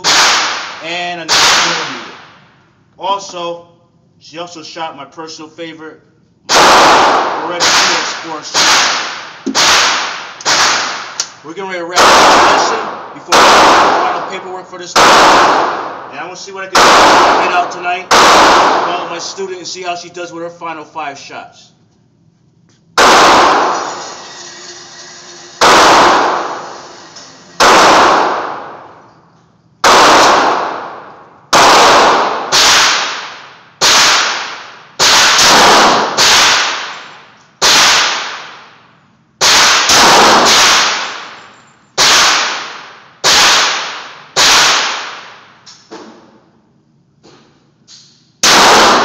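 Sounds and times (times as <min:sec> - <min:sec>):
pistol shots echoing: 0:06.5 - 0:11.2, 0:11.9 - 0:19.2, 0:23.0 - 0:29.1, 0:29.8 - 0:37.0, 0:39.4 - 0:41.4, 0:48.4 - 0:49.0.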